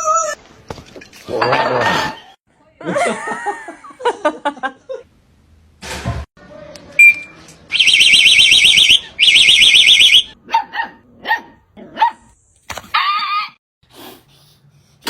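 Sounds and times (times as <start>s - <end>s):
electronic alarm warbling: 7.0s - 10.3s
dog barking: 10.4s - 12.3s.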